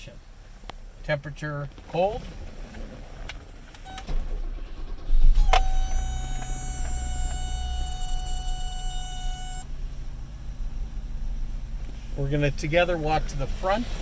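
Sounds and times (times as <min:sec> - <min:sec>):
car engine starting and idling: 0:00.0 - 0:14.0
high whine: 0:05.0 - 0:13.8.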